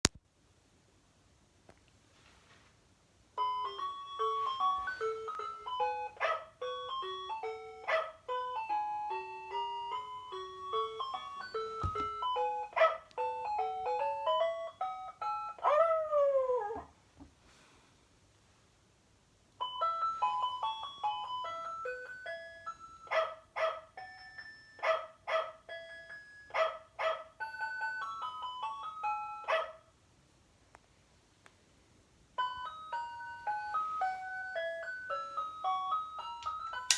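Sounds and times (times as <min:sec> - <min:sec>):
electronic toy beeping melody: 0:03.4 - 0:11.6
electronic dog bark: 0:06.1 - 0:06.6, 0:07.8 - 0:08.3, 0:12.7 - 0:13.1, 0:23.0 - 0:24.0, 0:24.8 - 0:25.7, 0:26.5 - 0:27.4, 0:29.4 - 0:29.8.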